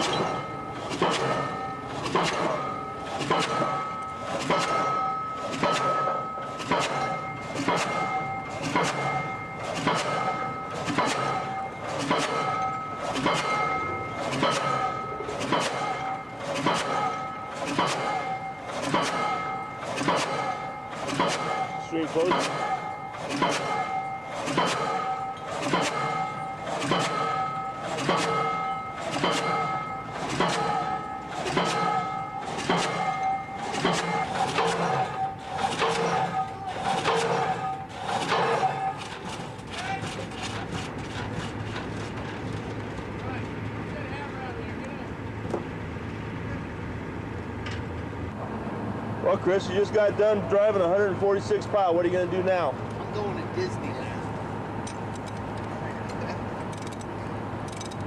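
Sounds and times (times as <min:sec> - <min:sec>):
ringing metallic tone: 0:00.0 - 0:39.2
pile-driving hammer striking: 0:00.0 - 0:41.2.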